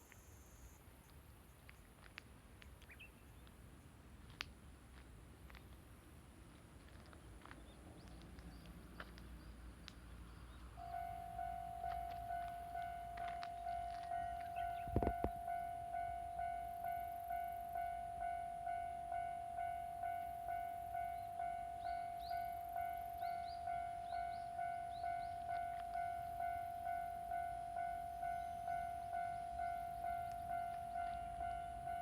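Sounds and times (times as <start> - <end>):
level crossing warning bell: 10.8 - 32.0.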